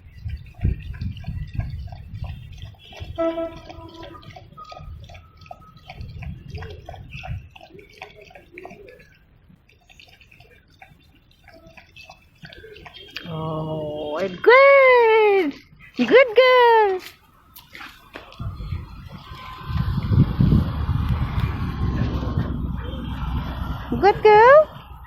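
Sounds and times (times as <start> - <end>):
dog lapping milk: 0.0 - 25.0
low rumble: 18.4 - 24.2.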